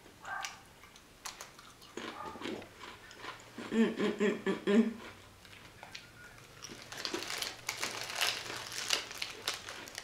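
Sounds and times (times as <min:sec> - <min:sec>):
plastic crisp packet crinkling: 0:06.4 - 0:10.0.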